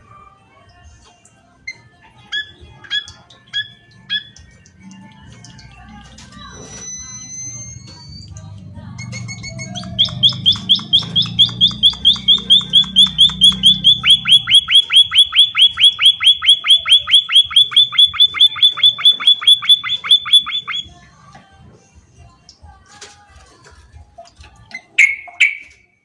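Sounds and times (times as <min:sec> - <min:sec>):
bird chirping rapidly: 0:02.2 - 0:04.4, 0:09.0 - 0:21.0.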